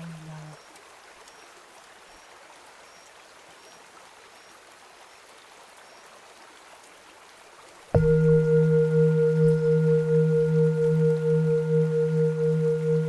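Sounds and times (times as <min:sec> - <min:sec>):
high drip-like blips: 0:08.0 - 0:13.0.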